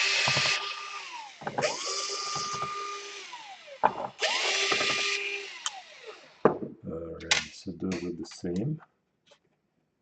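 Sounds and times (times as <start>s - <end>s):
electric screwdriver spinning: 0.0s - 6.4s.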